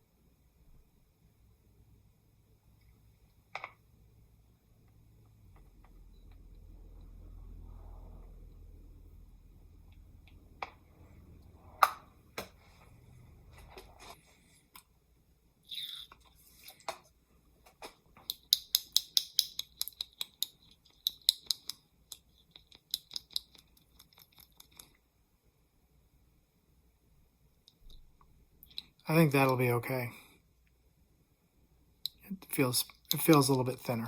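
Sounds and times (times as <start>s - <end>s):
low hum: 4.2s - 14.1s.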